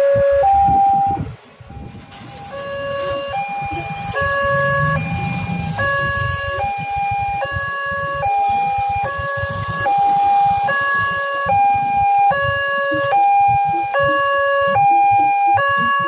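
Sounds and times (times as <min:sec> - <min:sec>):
two-tone electronic siren: 0:00.0 - 0:16.0.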